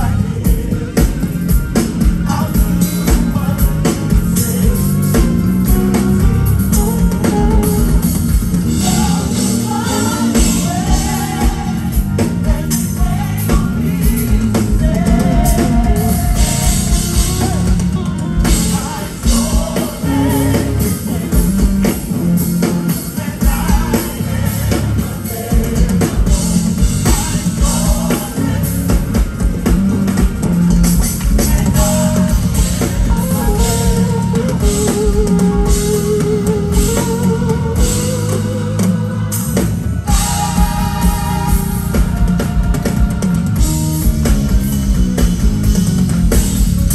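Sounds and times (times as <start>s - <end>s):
drum kit: 0.0s - 46.9s
guitar: 0.0s - 46.9s
live band playing: 0.0s - 46.9s.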